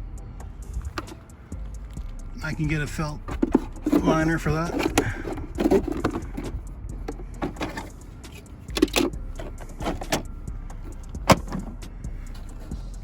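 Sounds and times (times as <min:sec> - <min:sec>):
plastic parts clicking and knocking: 0:00.8 - 0:01.3, 0:03.2 - 0:12.7.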